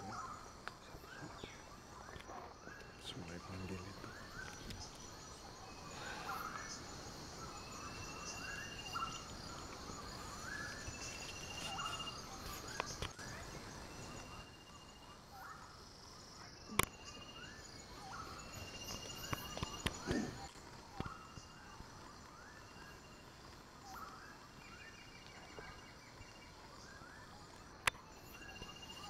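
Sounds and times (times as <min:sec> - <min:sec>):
birds calling: 0:00.0 - 0:29.0
high insect drone: 0:00.0 - 0:29.0
bird trill: 0:02.7 - 0:13.2, 0:27.8 - 0:29.0.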